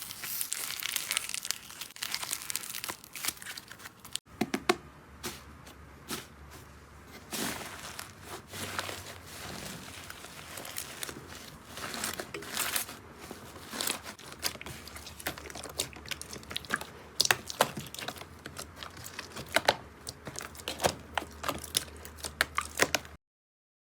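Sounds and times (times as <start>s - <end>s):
slime crackling and popping: 0.0s - 4.2s, 13.6s - 23.2s.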